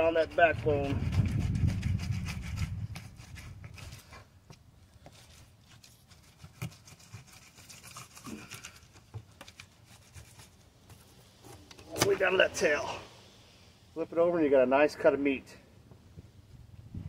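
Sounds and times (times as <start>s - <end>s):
knife scraping through fish: 0.0s - 4.3s, 5.1s - 10.6s.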